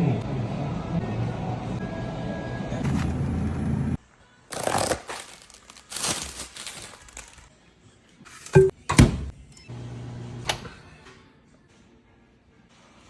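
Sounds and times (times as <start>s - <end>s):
background music: 0.0s - 9.7s, 10.4s - 13.0s
plastic wrapper crinkling: 4.5s - 7.5s.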